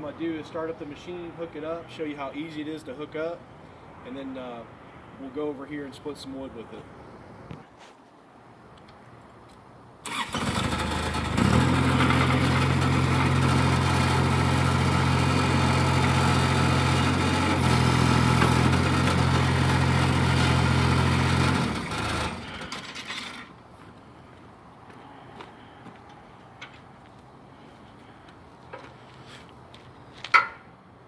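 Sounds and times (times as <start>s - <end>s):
engine cranking and idling: 10.0s - 23.6s.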